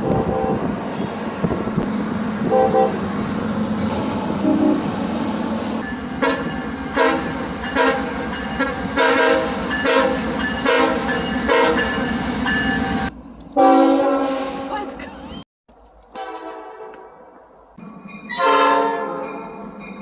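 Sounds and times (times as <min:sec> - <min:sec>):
train horn: 0:00.0 - 0:01.2, 0:02.4 - 0:03.7, 0:04.4 - 0:04.9, 0:06.2 - 0:11.9, 0:12.9 - 0:14.9, 0:16.2 - 0:17.2, 0:18.3 - 0:19.3.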